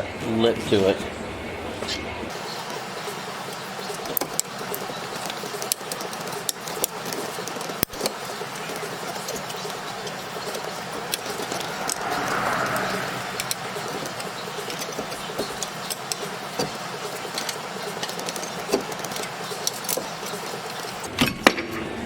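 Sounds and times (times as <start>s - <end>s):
steady background rush: 10.4s - 15.4s.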